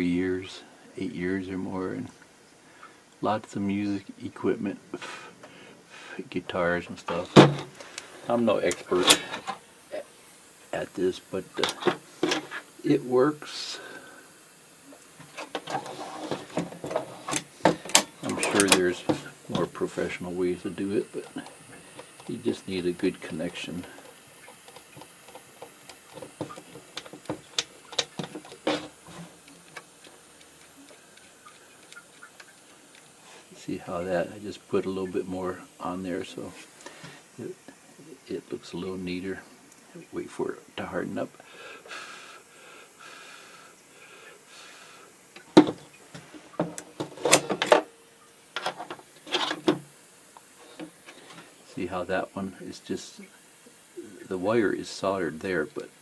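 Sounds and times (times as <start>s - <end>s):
solder ticking and crackling: 7.1s - 42.5s, 48.2s - 56.0s
tools and wires clicking: 15.2s - 19.7s, 24.0s - 33.1s.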